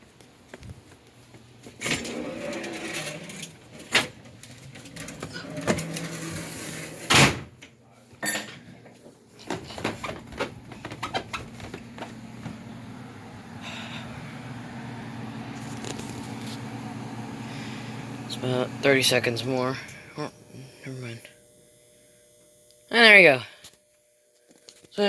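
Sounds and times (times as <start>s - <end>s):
air handler blower hum: 0.1s - 24.2s
door opening and shutting: 1.8s - 8.6s, 9.5s - 11.8s.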